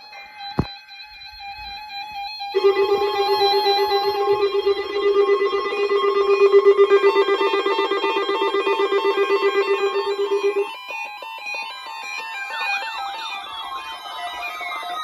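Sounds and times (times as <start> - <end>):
pulsing electronic alarm tone: 2.6 - 10.7.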